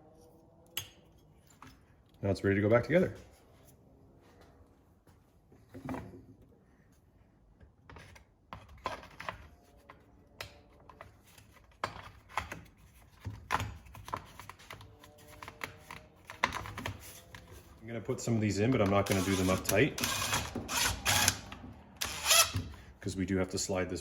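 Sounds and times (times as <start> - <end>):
plastic parts clicking and knocking: 10.4 - 17.6.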